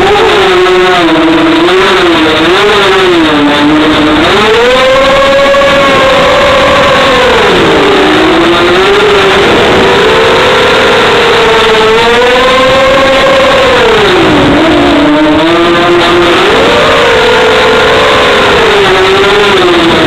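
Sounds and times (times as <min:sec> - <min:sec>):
drone motors whining: 0:00.0 - 0:20.0.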